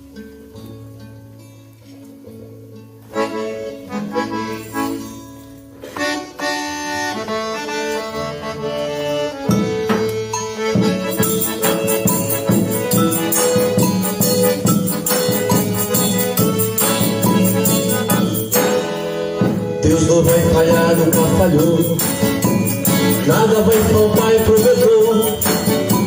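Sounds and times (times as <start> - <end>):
instrumental melody: 0.0 - 26.0
live band playing: 3.0 - 26.0
fast high percussion ticking: 9.5 - 26.0.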